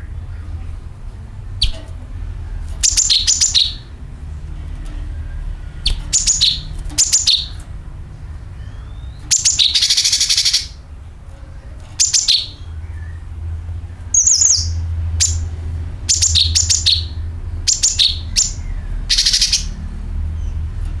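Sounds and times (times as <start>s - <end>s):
steady low hum: 0.0s - 21.0s
bird chattering: 1.6s - 1.9s, 2.8s - 4.0s, 5.8s - 10.8s, 11.9s - 13.3s, 14.1s - 19.8s.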